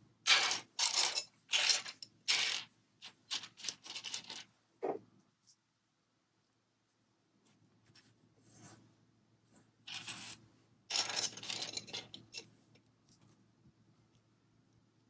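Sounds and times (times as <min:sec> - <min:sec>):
plastic toy bricks rattling: 0:00.3 - 0:02.7, 0:03.3 - 0:04.5, 0:09.9 - 0:12.5.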